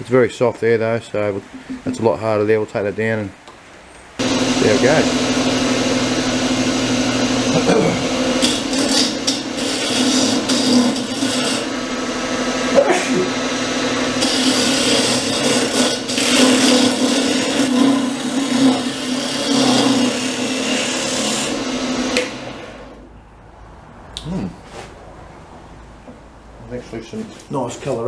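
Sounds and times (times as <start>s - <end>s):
tool scraping spinning wood: 4.2s - 23.0s
wood lathe humming: 4.2s - 23.1s.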